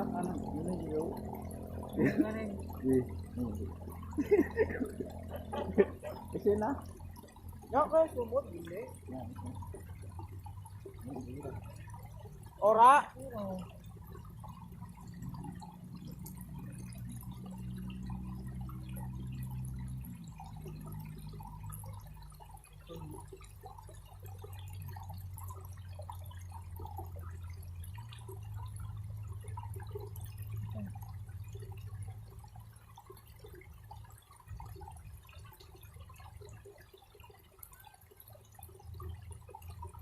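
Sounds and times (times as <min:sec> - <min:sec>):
low steady hum: 0:00.0 - 0:40.0
water dripping and trickling: 0:00.0 - 0:40.0.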